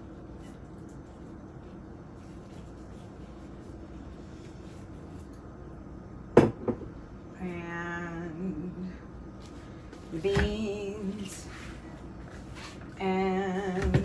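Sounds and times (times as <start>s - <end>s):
person humming: 7.4s - 9.0s.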